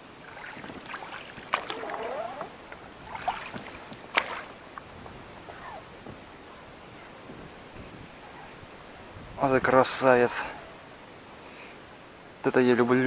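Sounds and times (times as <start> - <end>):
water splashing: 0.0 - 6.0.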